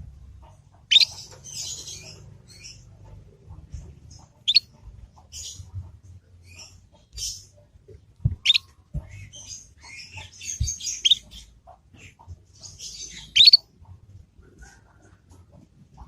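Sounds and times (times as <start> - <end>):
canary twittering: 0.1 - 13.9
sharp bird calls: 0.4 - 2.9, 4.1 - 5.8, 8.4 - 13.7
short low thuds: 8.2 - 9.3.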